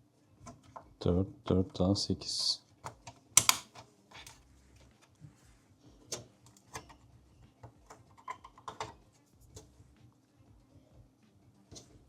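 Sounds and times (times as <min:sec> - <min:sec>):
clicks of handling computer parts: 0:02.9 - 0:04.4.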